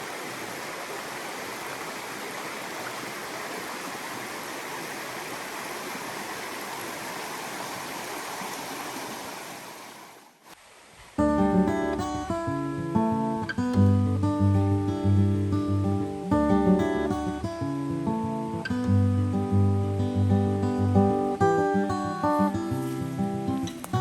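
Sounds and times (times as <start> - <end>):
stream water rushing: 0.0 - 12.5, 20.6 - 24.0.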